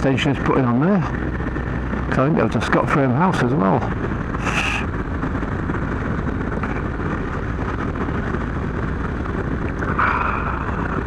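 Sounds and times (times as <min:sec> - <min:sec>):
motorcycle engine running: 0:00.0 - 0:11.0
wind noise on microphone: 0:00.0 - 0:11.0.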